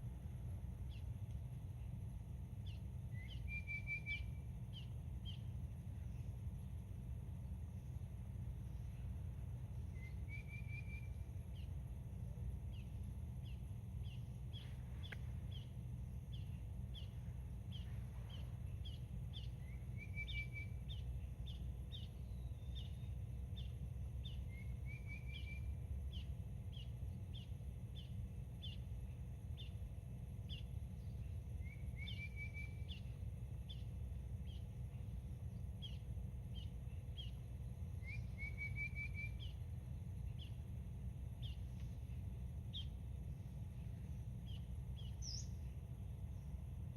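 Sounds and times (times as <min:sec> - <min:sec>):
low outdoor rumble: 0:00.0 - 0:46.9
songbirds chirping: 0:00.0 - 0:46.9
bird trill: 0:02.6 - 0:05.5, 0:09.9 - 0:11.7, 0:12.7 - 0:28.9, 0:30.5 - 0:34.7, 0:35.8 - 0:40.6, 0:44.4 - 0:45.7.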